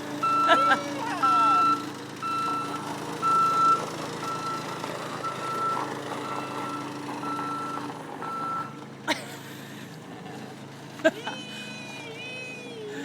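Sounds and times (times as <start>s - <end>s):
reversing alarm beeping: 0.0s - 8.8s
machine engine running: 0.0s - 9.0s.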